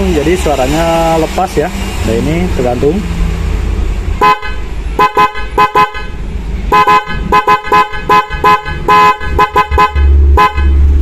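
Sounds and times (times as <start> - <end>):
car horn toots: 4.2 - 11.0.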